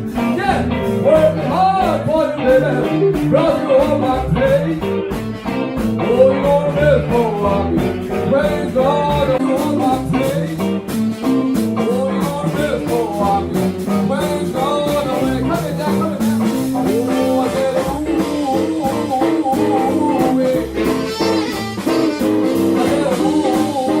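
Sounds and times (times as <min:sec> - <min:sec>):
guitar playing: 0:00.0 - 0:24.0
person singing blues: 0:00.0 - 0:24.0.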